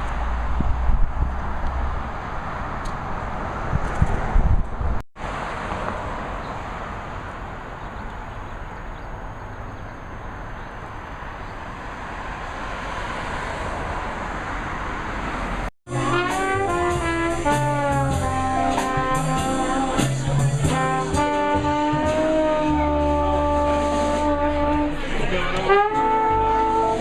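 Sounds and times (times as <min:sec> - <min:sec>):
jazzy brass music: 0:15.9 - 0:27.0.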